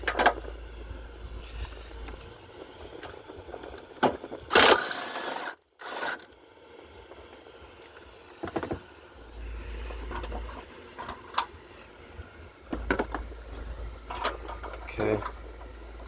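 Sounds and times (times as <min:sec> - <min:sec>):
impact wrench firing: 0:04.5 - 0:06.2
tool clicks: 0:04.5 - 0:06.3.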